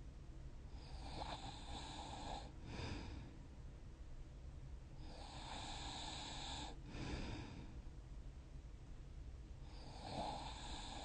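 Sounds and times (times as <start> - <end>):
person snoring: 9.8 - 11.0.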